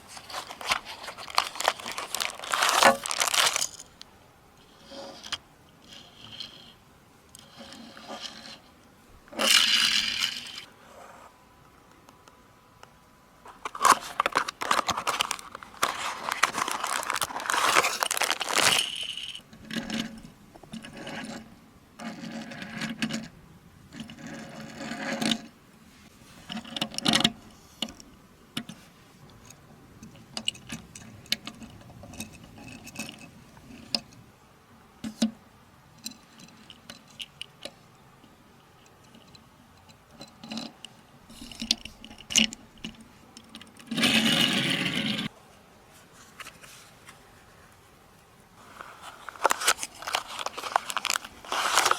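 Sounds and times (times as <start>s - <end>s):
packaging rustling and crinkling: 0.0s - 4.0s, 13.5s - 19.4s, 48.6s - 51.9s.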